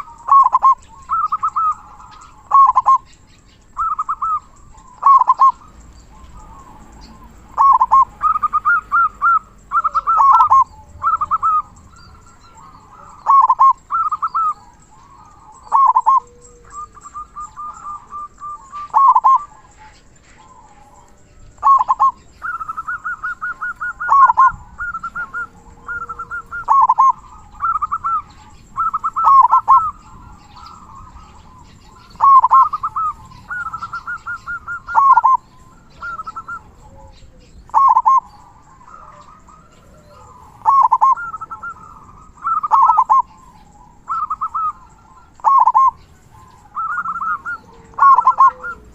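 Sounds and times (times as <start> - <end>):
dove cooing: 0.0 - 48.9.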